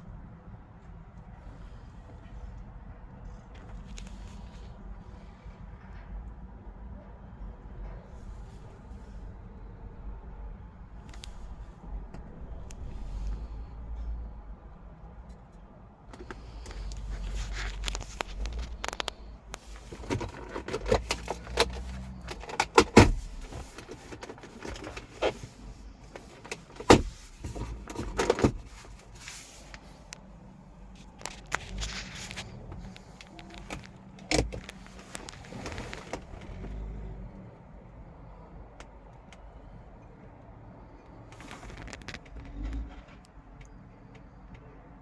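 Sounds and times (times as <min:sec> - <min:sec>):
car doors and latches clicking: 0:19.8 - 0:25.4, 0:26.4 - 0:28.7, 0:33.2 - 0:36.7.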